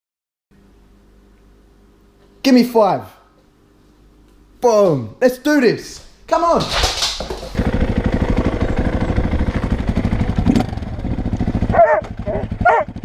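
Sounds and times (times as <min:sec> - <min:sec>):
motorcycle engine running: 0:07.4 - 0:13.0
dog barking: 0:11.7 - 0:13.0.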